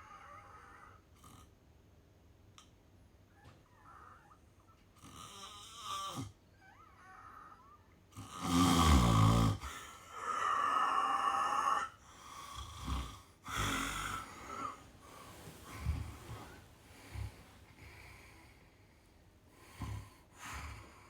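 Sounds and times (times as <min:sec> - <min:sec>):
person snoring: 0:07.2 - 0:17.4.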